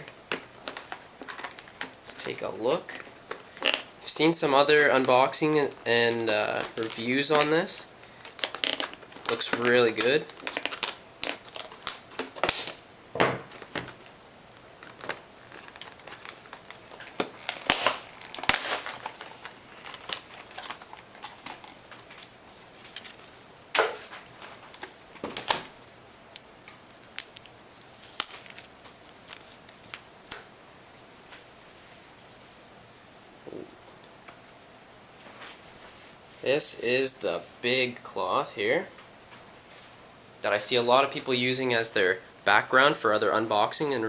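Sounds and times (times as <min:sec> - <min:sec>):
packaging crinkling and rustling: 0:06.1 - 0:12.8, 0:13.4 - 0:30.4.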